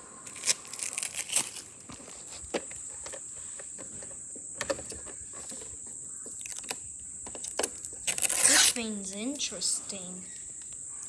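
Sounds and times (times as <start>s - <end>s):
high-pitched whine: 0.0s - 2.1s
parts and packaging handled: 0.0s - 10.9s.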